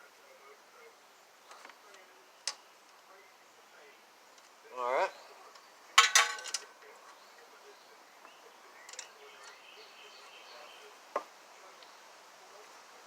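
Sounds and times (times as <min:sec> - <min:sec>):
metal hand tool clanking: 0:06.0 - 0:06.7.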